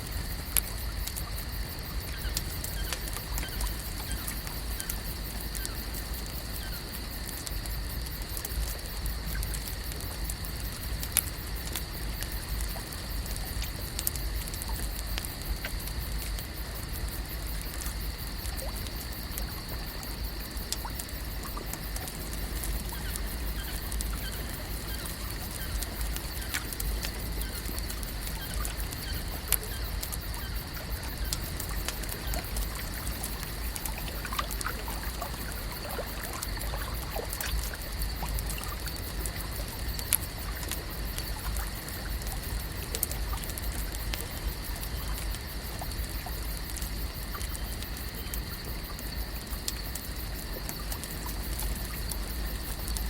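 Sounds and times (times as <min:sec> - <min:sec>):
small clicks and splashes: 0:00.0 - 0:53.0
water lapping at shore: 0:11.6 - 0:53.0.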